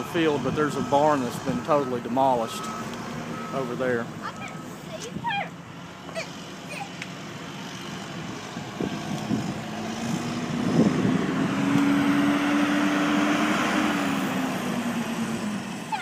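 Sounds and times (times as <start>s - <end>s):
vehicle passing by: 5.8s - 16.0s.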